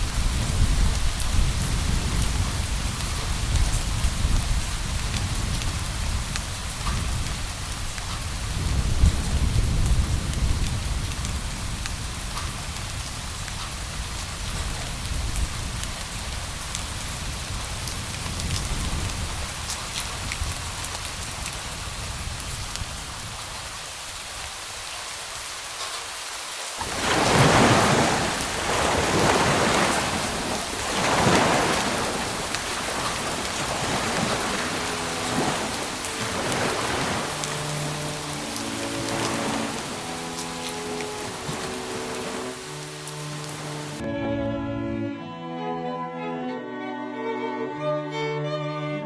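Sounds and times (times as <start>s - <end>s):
steady rain: 0.0s - 44.0s
loud thunder claps: 26.8s - 38.3s
thunder rumbling: 26.8s - 44.0s.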